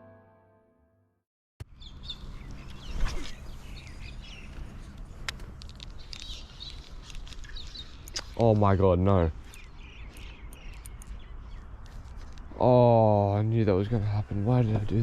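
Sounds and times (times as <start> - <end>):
piano chord: 0.0 - 1.2
small birds chirping: 1.6 - 15.0.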